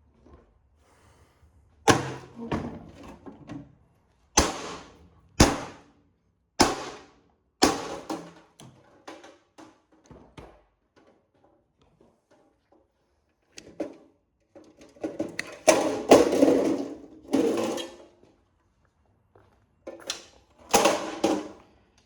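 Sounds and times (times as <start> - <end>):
parts knocking and clunking: 7.6 - 12.8.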